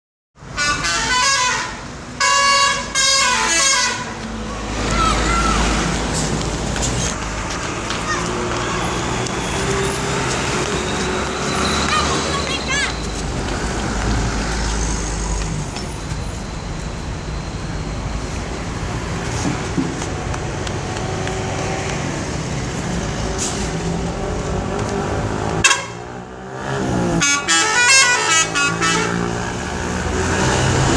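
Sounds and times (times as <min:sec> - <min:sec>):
road traffic rumble: 0:00.4 - 0:30.9
bus air horn tune: 0:00.5 - 0:04.2, 0:25.6 - 0:26.1, 0:27.2 - 0:29.4.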